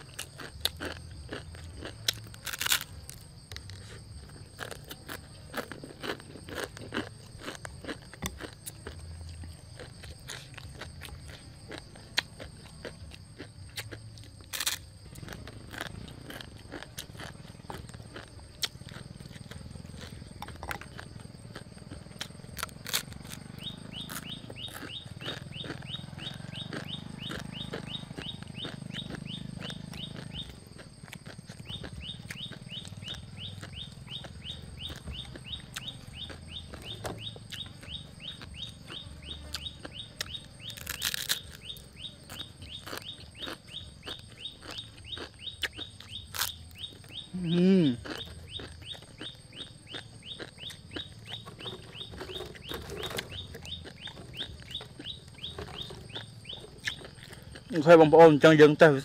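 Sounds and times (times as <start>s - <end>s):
chewing crunchy noodles: 0.0s - 59.0s
fast steady chirping: 15.8s - 59.0s.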